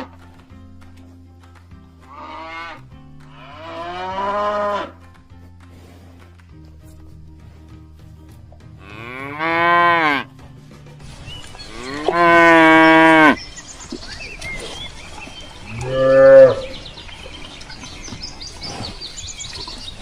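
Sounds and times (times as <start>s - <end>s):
cow mooing: 3.4s - 5.0s, 8.8s - 10.3s, 11.7s - 13.4s, 15.7s - 16.8s.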